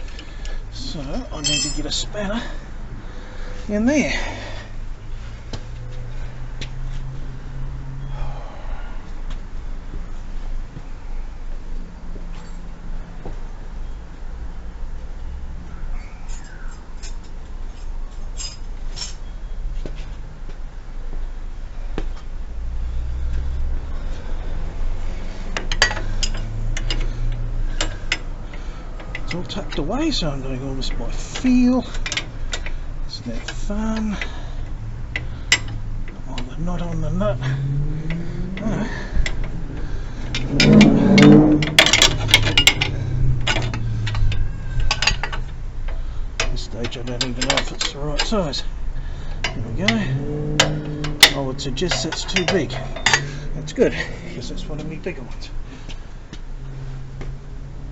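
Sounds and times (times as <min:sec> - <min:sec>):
spanner clinking against metal: 0:01.3 - 0:02.2, 0:16.3 - 0:19.2, 0:25.6 - 0:28.3, 0:40.3 - 0:48.4, 0:49.4 - 0:53.8
spanner clinking on nut: 0:01.4 - 0:02.1, 0:40.4 - 0:48.4
steady low hum: 0:19.6 - 0:57.9.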